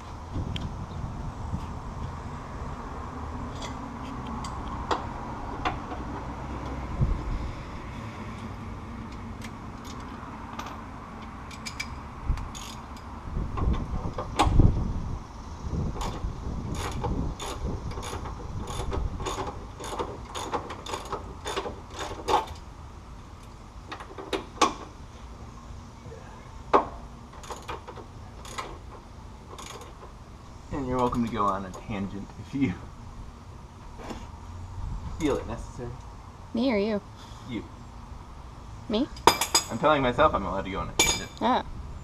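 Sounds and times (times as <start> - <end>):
ratchet wrench clicking: 11.5 - 13.0.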